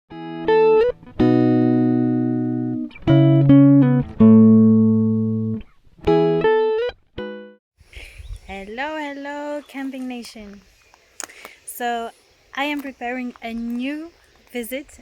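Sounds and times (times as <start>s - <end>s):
guitar playing chords: 0.1s - 7.6s
plucked guitar notes: 0.1s - 7.6s.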